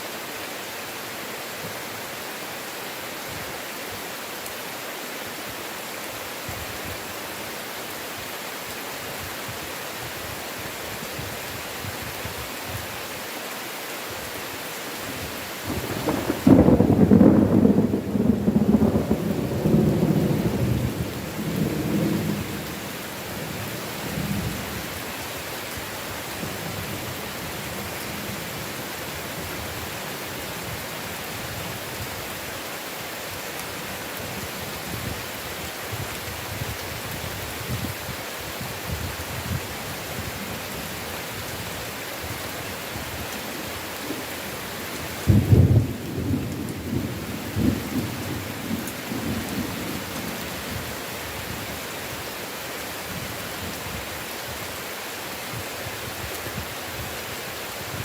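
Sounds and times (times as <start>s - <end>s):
heavy rain: 0.0s - 58.0s
thunder rumbling: 15.7s - 22.8s, 45.3s - 50.0s.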